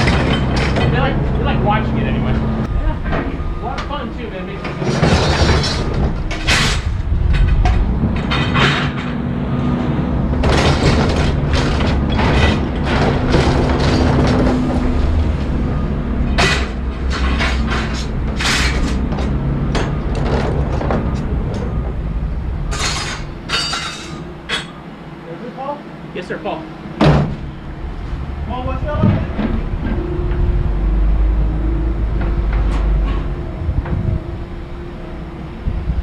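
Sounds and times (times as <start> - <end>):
loud metallic bangs and clanks: 0.0 - 25.1, 26.8 - 35.4
heavy machinery rumbling: 0.0 - 36.0.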